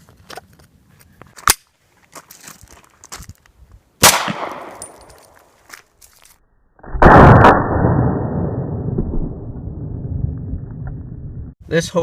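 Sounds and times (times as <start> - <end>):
pistol shot: 4.0 - 5.0.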